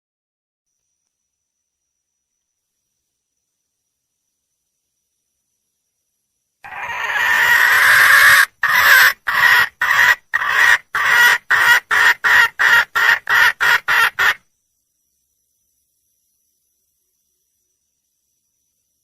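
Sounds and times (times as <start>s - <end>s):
junglefowl hen calling: 6.7s - 14.4s.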